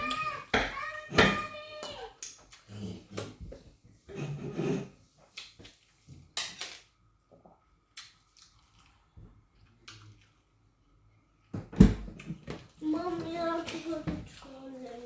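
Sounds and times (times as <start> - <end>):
wet chewing and lip smacks: 7.9 - 10.5.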